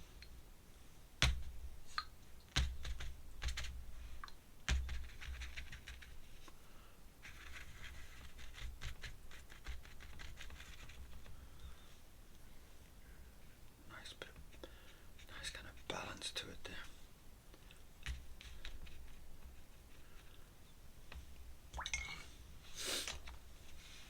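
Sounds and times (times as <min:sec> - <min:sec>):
scratchy rubbing and rustling: 0:04.9 - 0:06.5, 0:07.2 - 0:11.4, 0:18.0 - 0:20.3.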